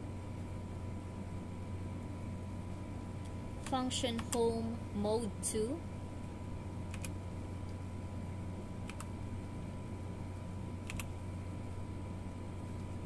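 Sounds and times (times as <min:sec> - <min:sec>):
steady low hum: 0:00.0 - 0:13.0
mechanical keyboard key clicks: 0:10.9 - 0:11.1.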